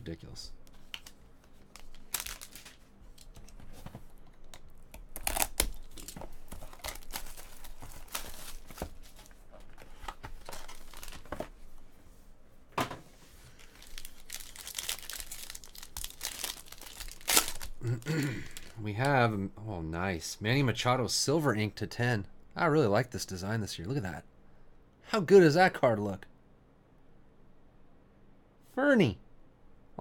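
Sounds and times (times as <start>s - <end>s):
wrappers crinkling and tearing: 0.9s - 3.6s, 4.4s - 9.4s, 10.4s - 11.4s, 13.5s - 18.8s.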